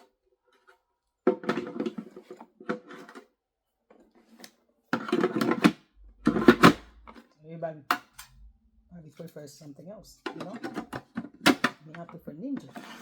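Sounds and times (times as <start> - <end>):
plastic parts clattering and clicking: 0.0 - 3.3.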